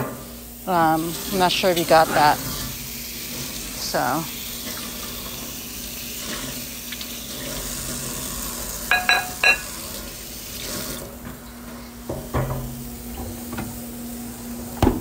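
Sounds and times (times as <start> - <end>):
ringing metallic clinks: 8.9 - 9.6.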